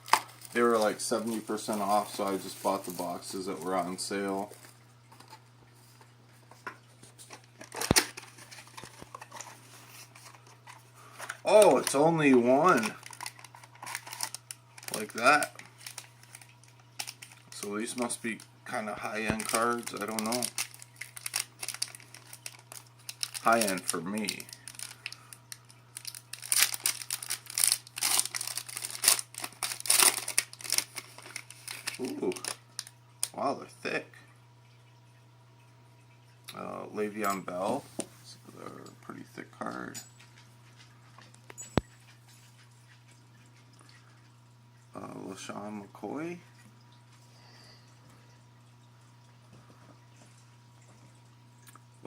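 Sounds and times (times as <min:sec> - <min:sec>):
card pack wrapper tearing and crinkling: 0:07.5 - 0:10.4, 0:11.5 - 0:18.4, 0:19.1 - 0:33.0
cardboard box rustling: 0:26.0 - 0:32.0.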